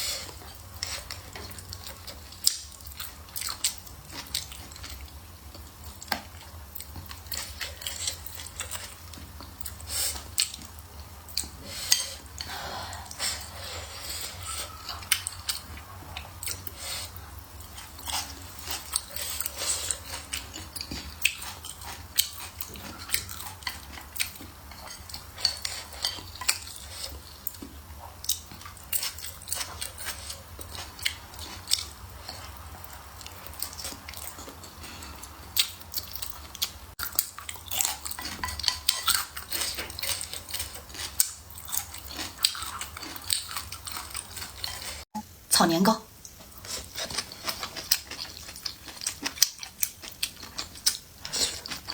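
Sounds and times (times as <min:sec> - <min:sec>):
chewing and biting: 0:12.9 - 0:45.0, 0:46.3 - 0:51.9.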